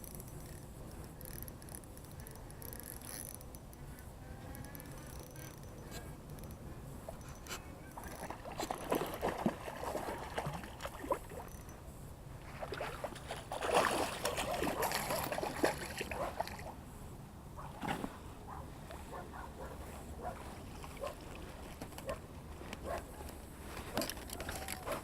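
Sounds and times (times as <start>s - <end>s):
water splashing and sloshing: 7.9s - 11.7s, 12.3s - 16.8s, 17.6s - 25.0s.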